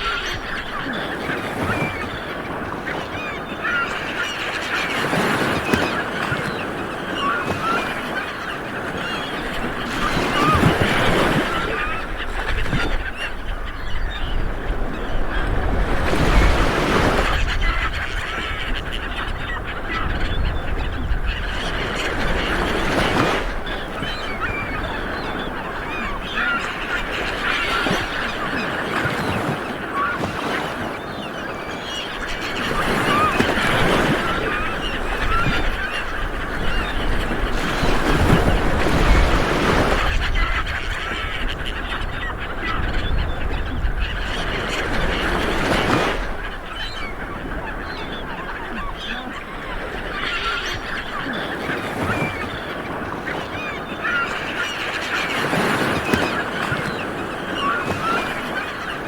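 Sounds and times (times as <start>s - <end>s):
birds calling and chirping: 0.0s - 59.0s
small waves washing onto beach: 0.0s - 59.0s.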